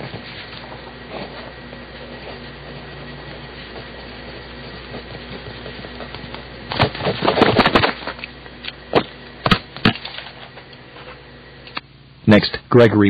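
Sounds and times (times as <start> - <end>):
tape hiss: 0.0 - 13.0.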